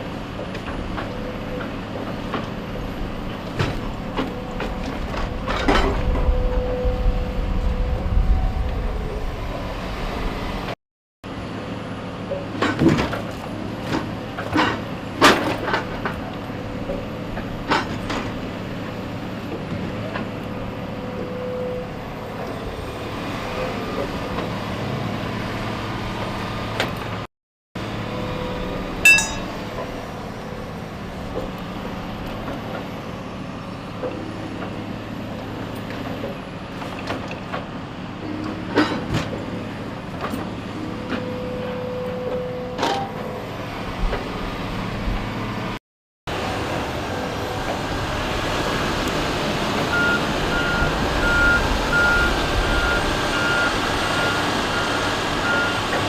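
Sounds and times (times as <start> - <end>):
heavy machine engine running: 0.0 - 56.0
sharp clunks: 29.1 - 29.6
reversing alarm beeping: 49.9 - 55.9.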